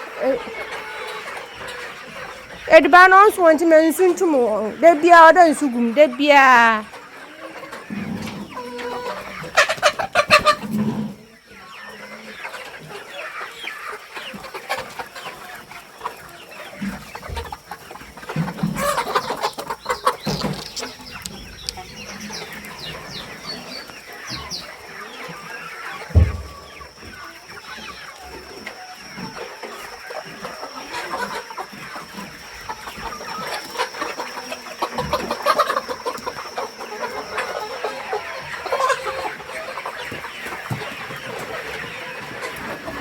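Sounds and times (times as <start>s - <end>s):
chickens clucking and calling: 0.0s - 43.0s
low thump: 26.1s - 26.9s.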